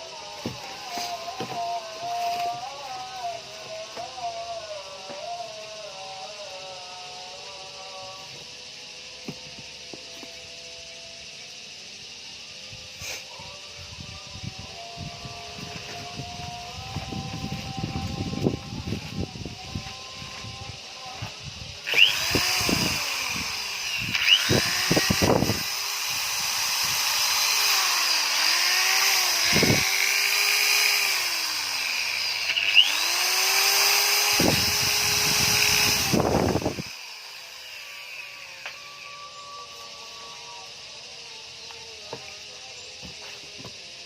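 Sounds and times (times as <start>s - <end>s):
power tool motor whining: 0.0s - 44.0s.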